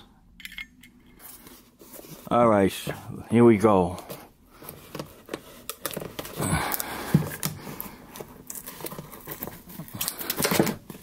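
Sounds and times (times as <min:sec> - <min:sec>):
rustling: 0:04.1 - 0:11.0.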